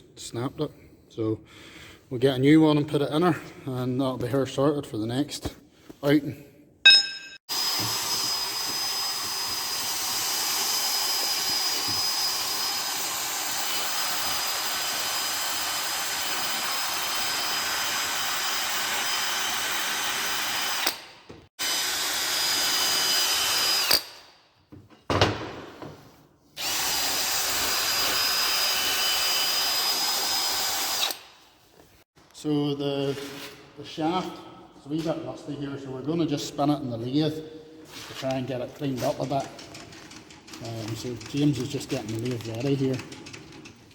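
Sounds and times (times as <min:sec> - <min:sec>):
power tool motor whining: 0:07.5 - 0:24.2.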